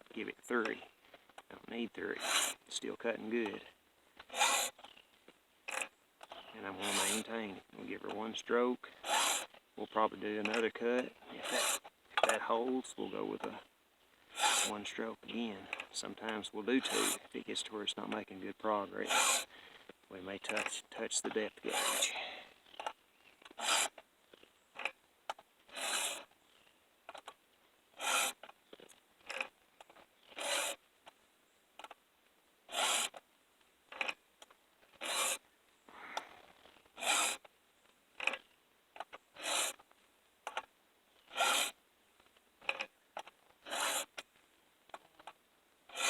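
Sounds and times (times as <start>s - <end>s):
file rasping on chainsaw chain: 2.1s - 2.8s, 4.3s - 4.9s, 5.7s - 7.4s, 8.9s - 9.6s, 10.4s - 12.5s, 14.3s - 14.9s, 16.7s - 17.4s, 19.0s - 19.5s, 21.6s - 22.9s, 23.5s - 24.0s, 25.7s - 26.3s, 28.0s - 28.5s, 30.2s - 30.8s, 32.7s - 33.2s, 34.9s - 35.4s, 37.0s - 37.5s, 39.3s - 39.8s, 41.2s - 41.8s, 42.6s - 44.2s.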